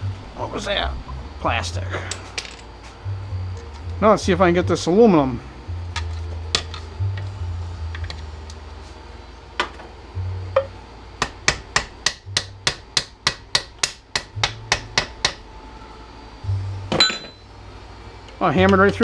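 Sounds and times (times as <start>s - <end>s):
hammer striking metal: 10.6s - 15.4s, 16.9s - 17.5s.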